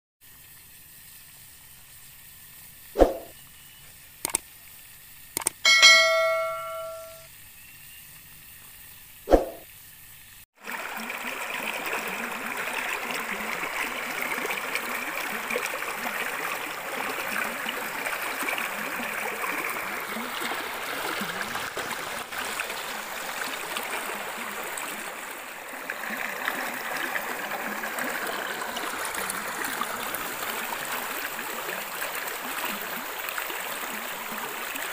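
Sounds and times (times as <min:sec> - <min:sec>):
ringing bell-like chime: 0:05.6 - 0:07.2
rushing water: 0:10.6 - 0:34.9.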